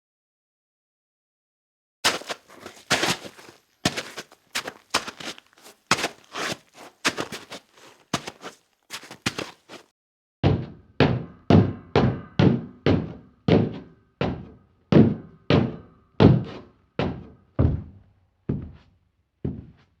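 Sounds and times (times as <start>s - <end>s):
boots walking: 2.0s - 9.9s.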